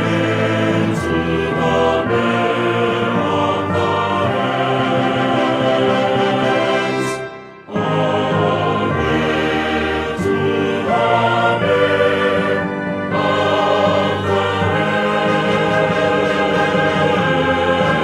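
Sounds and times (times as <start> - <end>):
choir singing sustained chords: 0.0 - 18.0.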